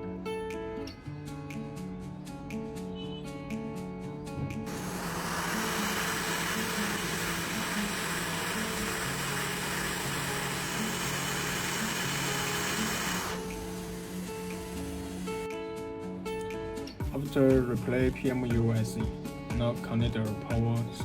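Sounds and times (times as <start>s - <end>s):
background music with sustained tones: 0.0s - 21.0s
hot-air rework station hissing: 4.7s - 15.5s.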